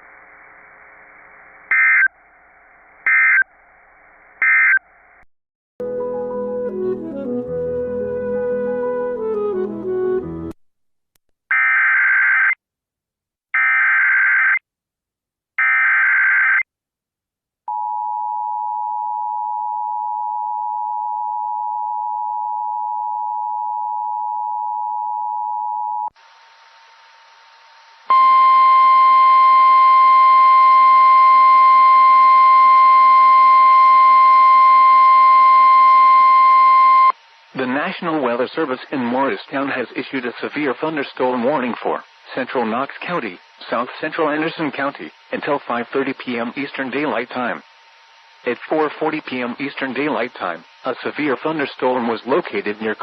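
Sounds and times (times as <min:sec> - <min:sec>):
buzzy single-tone alarm: 0:01.7 - 0:02.1, 0:03.0 - 0:03.4, 0:04.4 - 0:04.8, 0:11.5 - 0:12.6, 0:13.6 - 0:14.6, 0:15.6 - 0:16.6, 0:26.1 - 0:37.7
harsh data bursts: 0:01.7 - 0:02.1, 0:03.0 - 0:03.4.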